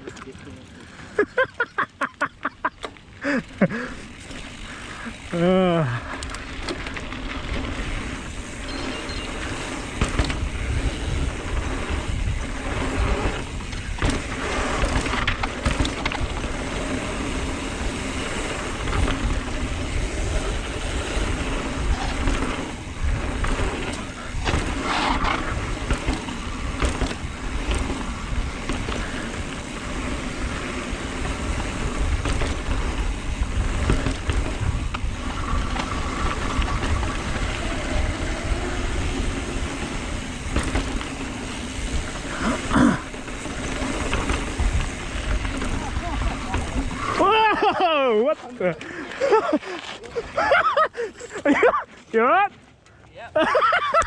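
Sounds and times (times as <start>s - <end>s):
bike tyre noise on dirt: 0.0s - 54.0s
bike knocks and rattles: 6.2s - 47.7s
wind rushing on microphone: 9.9s - 16.4s, 18.8s - 42.6s, 43.4s - 47.5s.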